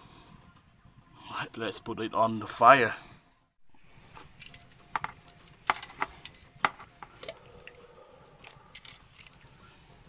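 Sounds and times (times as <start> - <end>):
grill utensils clicking and knocking: 4.1 - 7.4, 8.4 - 9.4.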